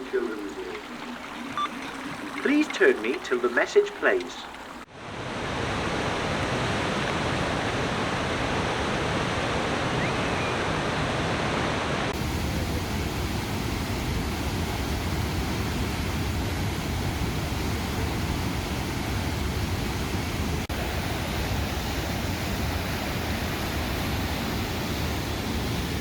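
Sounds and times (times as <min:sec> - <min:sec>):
waterfall rushing: 0:00.0 - 0:04.9.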